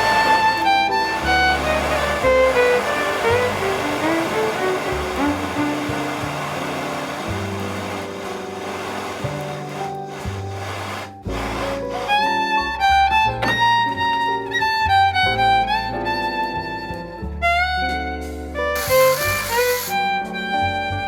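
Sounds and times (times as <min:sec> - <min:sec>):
hissing swell: 0:00.0 - 0:09.9
instrumental background music: 0:00.0 - 0:21.0.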